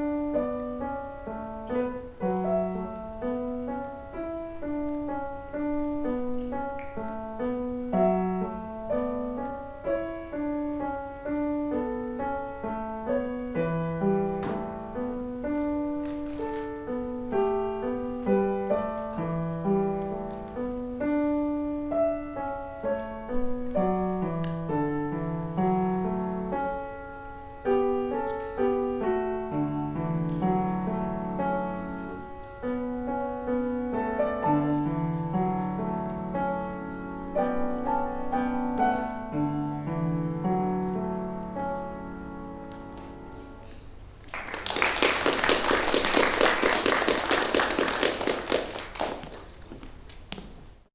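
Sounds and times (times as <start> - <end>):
solo piano playing: 0.0 - 44.3.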